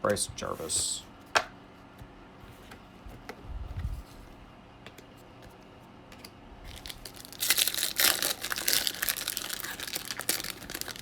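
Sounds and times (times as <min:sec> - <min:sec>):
foil wrapper crinkling: 0:06.7 - 0:11.0.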